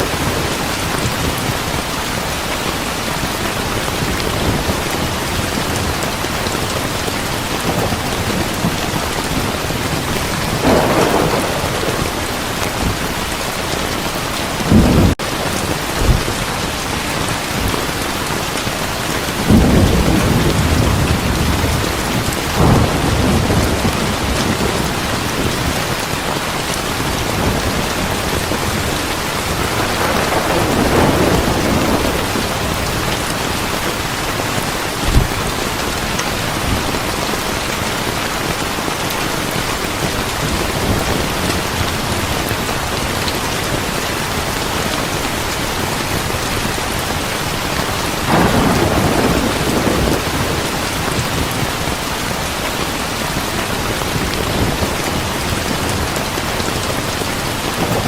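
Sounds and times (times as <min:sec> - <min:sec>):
heavy rain: 0:00.0 - 0:58.0
low rolls of thunder: 0:07.6 - 0:15.2, 0:19.4 - 0:26.1, 0:27.0 - 0:33.9, 0:48.3 - 0:51.8.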